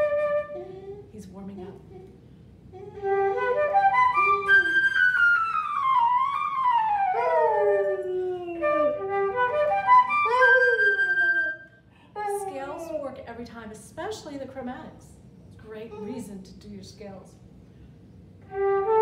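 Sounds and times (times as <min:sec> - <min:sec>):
flute playing scales: 0:00.0 - 0:00.6, 0:02.9 - 0:11.8, 0:18.4 - 0:19.0
dog howling: 0:02.9 - 0:09.2, 0:10.1 - 0:11.6.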